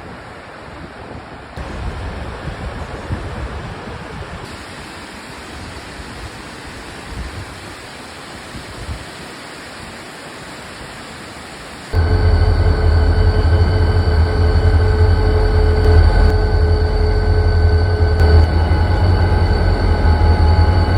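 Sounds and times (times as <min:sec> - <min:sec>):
loud low rumble with humming: 0:12.0 - 0:20.9.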